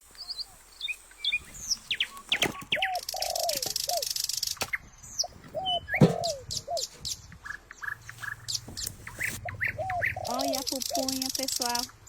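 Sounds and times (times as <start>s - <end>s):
birds chirping: 0.0s - 12.0s
sharp knocks: 6.0s - 6.4s
short hooked low calls: 7.9s - 12.0s.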